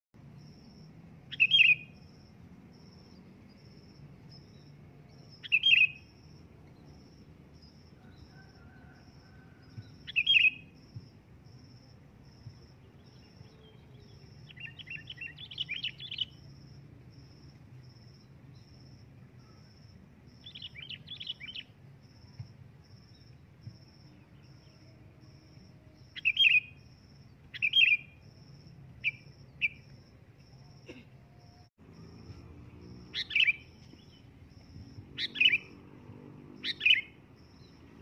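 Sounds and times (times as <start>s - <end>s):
bird calling: 5.4s - 6.0s, 27.5s - 28.1s, 33.1s - 34.2s, 35.2s - 35.7s, 36.6s - 37.1s.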